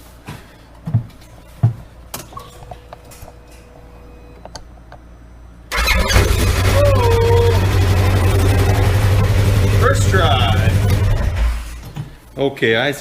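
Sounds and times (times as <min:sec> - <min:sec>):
engine starting and running: 0:05.7 - 0:12.0.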